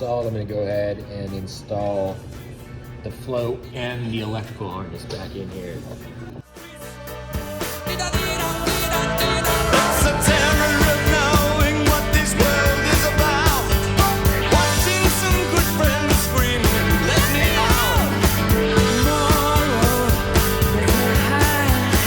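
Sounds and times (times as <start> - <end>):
rock music with singing: 6.0 - 22.0
steady drum beat: 7.4 - 22.0.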